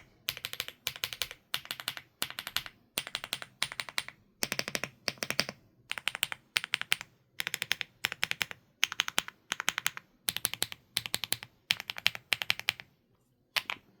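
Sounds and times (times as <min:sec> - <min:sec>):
mechanical keyboard typing: 0:00.0 - 0:12.9, 0:13.6 - 0:14.0.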